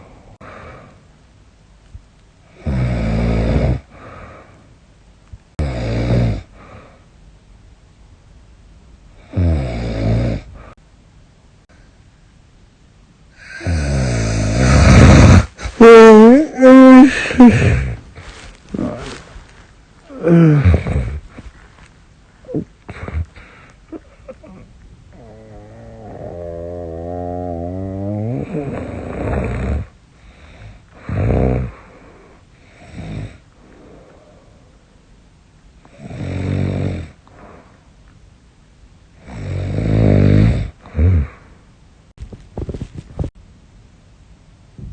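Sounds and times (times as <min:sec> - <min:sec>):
rough noisy breath: 0:00.0 - 0:01.1, 0:03.9 - 0:04.8, 0:30.2 - 0:35.0, 0:37.2 - 0:38.0
quiet breathing: 0:00.0 - 0:01.2, 0:03.8 - 0:05.6, 0:06.4 - 0:07.2, 0:10.4 - 0:10.9, 0:11.6 - 0:12.5, 0:13.3 - 0:35.2, 0:37.0 - 0:38.2, 0:40.6 - 0:41.8
woman snoring: 0:02.5 - 0:04.5, 0:09.2 - 0:10.8, 0:13.4 - 0:18.0, 0:20.1 - 0:21.4, 0:24.4 - 0:29.9, 0:30.6 - 0:32.0, 0:32.8 - 0:34.6, 0:35.8 - 0:37.5, 0:39.2 - 0:41.4.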